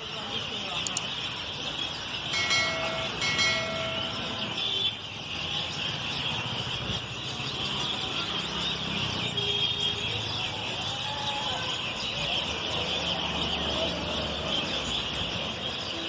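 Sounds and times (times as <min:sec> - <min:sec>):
chorus of birds chirping: 0:00.0 - 0:16.0
low traffic rumble: 0:00.0 - 0:16.0
vehicle horn honking: 0:02.4 - 0:05.0.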